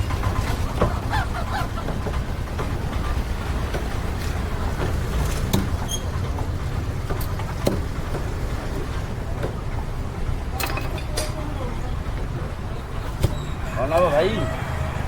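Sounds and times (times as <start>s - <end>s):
busy market rumble: 0.0s - 15.0s
sharp knocks: 7.0s - 8.4s.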